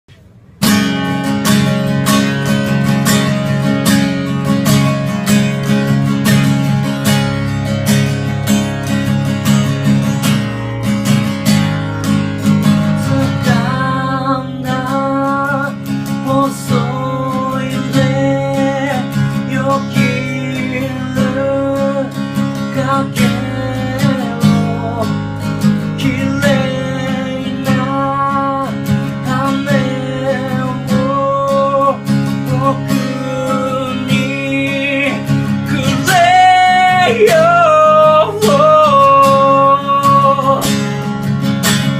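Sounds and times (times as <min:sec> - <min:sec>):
acoustic guitar strumming: 0:00.1 - 0:41.9
person singing: 0:13.0 - 0:25.2, 0:26.0 - 0:40.9.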